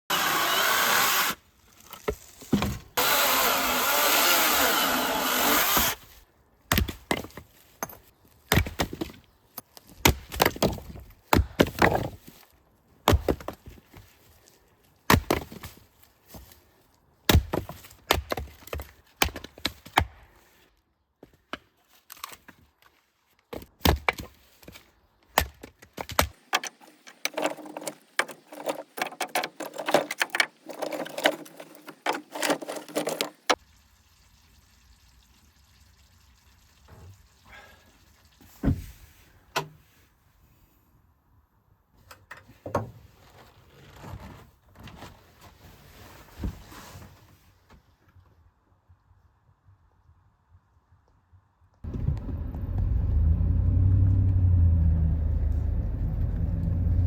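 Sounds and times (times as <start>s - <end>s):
sawing wood: 0.0s - 1.4s, 3.0s - 6.0s, 26.6s - 33.6s
wooden knocks and clatters: 25.6s - 33.6s.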